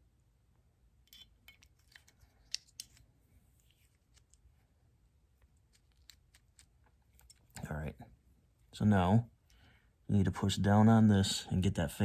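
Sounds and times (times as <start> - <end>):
small metal parts clicking: 1.0 - 3.1.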